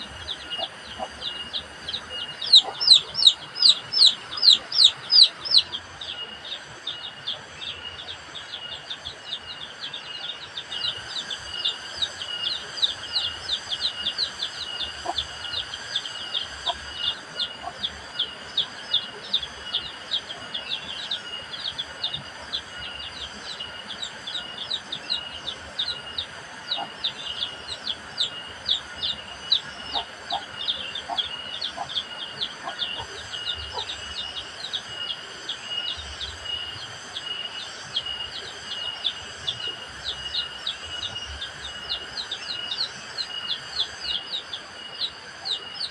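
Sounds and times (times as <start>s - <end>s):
constant high buzz: 0.0s - 45.9s.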